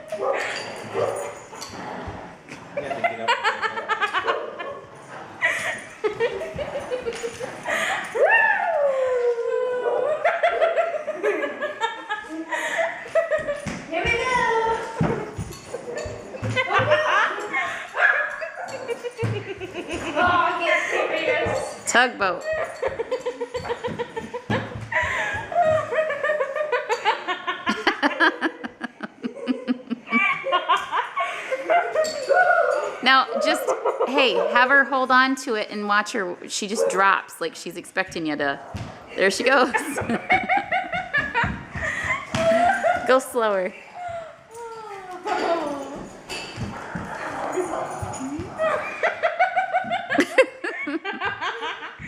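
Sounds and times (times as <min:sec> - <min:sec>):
people laughing: 0:02.7 - 0:13.7, 0:14.8 - 0:21.6, 0:22.4 - 0:32.9, 0:39.4 - 0:44.4, 0:47.2 - 0:52.0.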